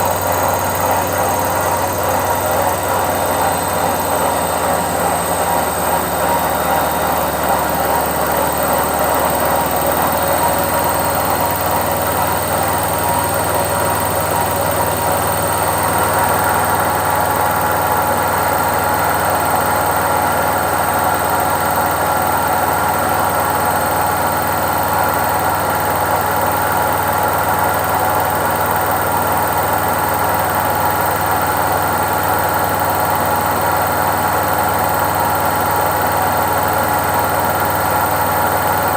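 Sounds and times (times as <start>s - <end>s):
high whine: 0.0s - 17.5s
washing machine drum spinning: 0.0s - 38.9s.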